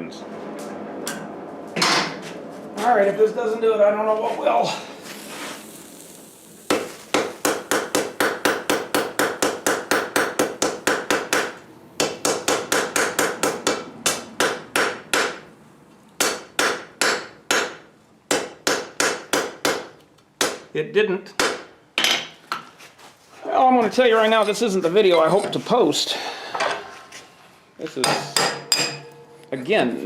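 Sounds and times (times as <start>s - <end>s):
hammer striking steel on anvil: 6.7s - 15.4s, 16.2s - 20.6s, 28.0s - 29.4s.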